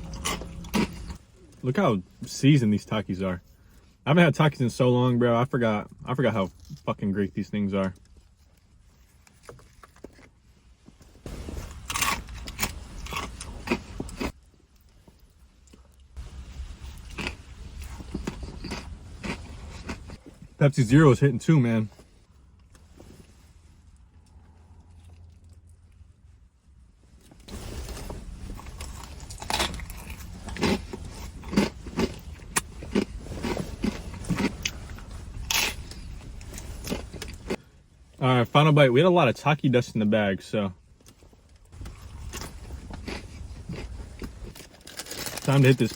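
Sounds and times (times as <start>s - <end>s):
crunching and chewing chips: 0.0s - 1.6s, 5.8s - 10.5s, 11.2s - 21.0s, 27.3s - 37.7s, 41.0s - 45.9s
steady low rumble: 0.0s - 7.6s, 11.2s - 39.8s.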